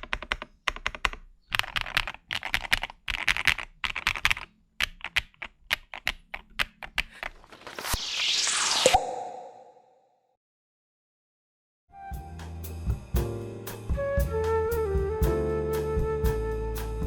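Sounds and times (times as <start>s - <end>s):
mechanical keyboard typing: 0.0s - 7.4s
whooshing sweep: 7.4s - 9.9s.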